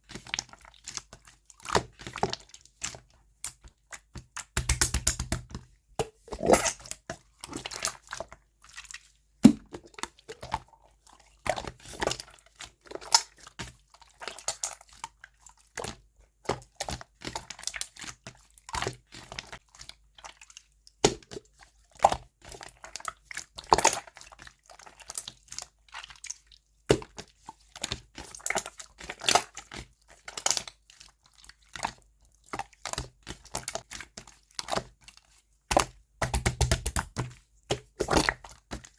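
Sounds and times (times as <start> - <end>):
slime crackling and squishing: 6.2 - 8.1.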